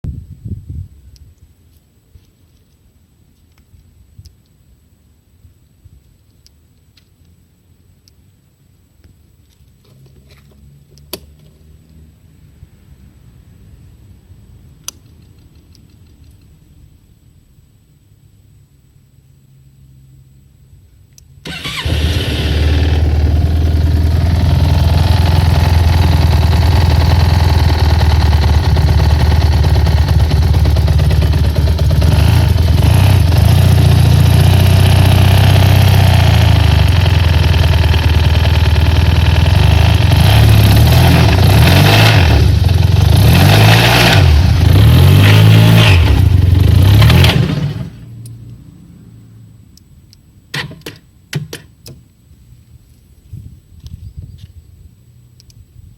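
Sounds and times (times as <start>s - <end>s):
scooter engine starting and revving: 21.4s - 48.1s.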